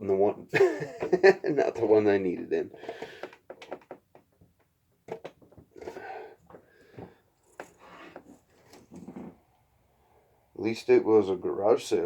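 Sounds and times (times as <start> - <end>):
light clicks and knocks: 0.9 - 5.7.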